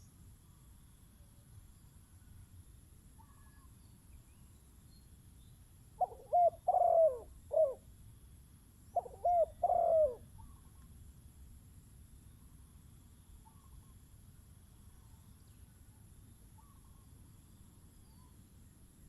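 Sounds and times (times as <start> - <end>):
dove cooing: 6.0 - 7.8, 9.0 - 10.6.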